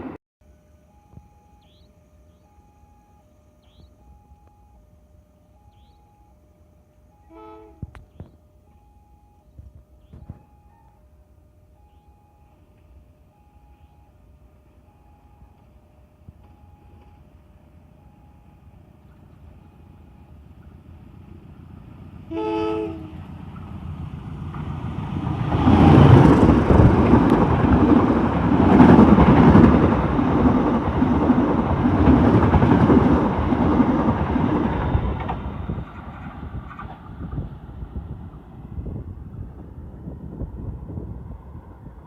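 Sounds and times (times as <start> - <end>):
train horn blast: 7.2 - 8.0, 22.3 - 23.3
train rushing past: 18.6 - 42.0
wheels clattering over rails: 24.4 - 38.1.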